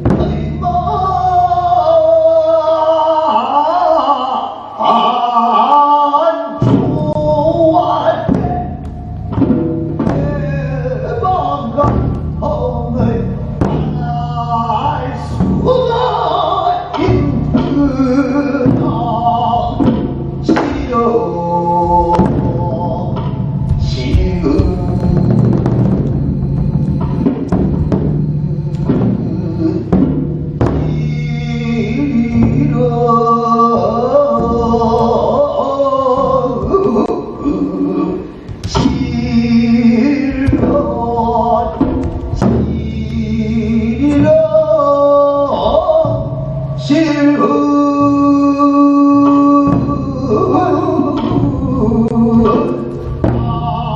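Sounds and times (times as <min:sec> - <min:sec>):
steady low backing: 0:00.0 - 0:05.1, 0:06.3 - 0:53.9
long held sung notes: 0:00.0 - 0:30.1
heavy drum strikes: 0:06.6 - 0:16.1, 0:16.9 - 0:35.4, 0:38.2 - 0:53.9
long wavering sung notes: 0:07.0 - 0:53.9.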